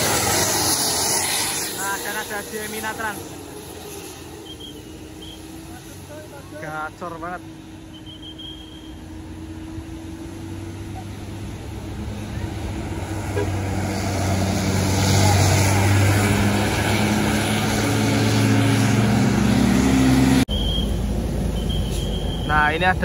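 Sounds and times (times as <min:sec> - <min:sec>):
rushing hiss: 0:00.0 - 0:07.7
diesel engine drone: 0:00.0 - 0:23.0.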